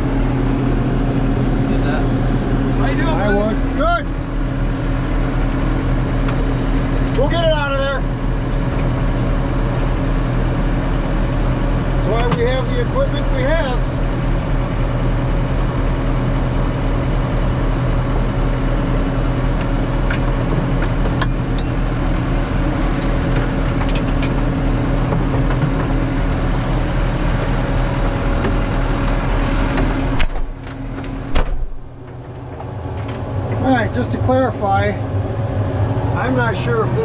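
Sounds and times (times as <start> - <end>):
tractor engine running: 0.0 - 37.0
sharp knocks: 31.3 - 32.7.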